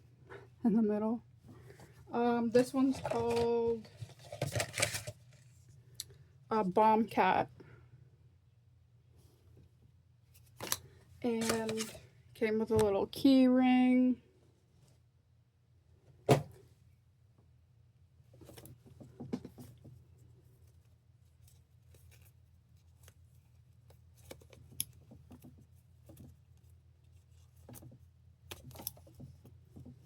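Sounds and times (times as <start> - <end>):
packaging rustling: 2.6 - 5.3, 10.6 - 12.0.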